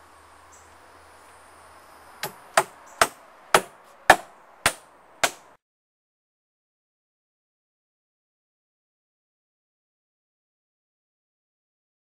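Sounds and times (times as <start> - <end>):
hand hammer striking: 2.2 - 5.4.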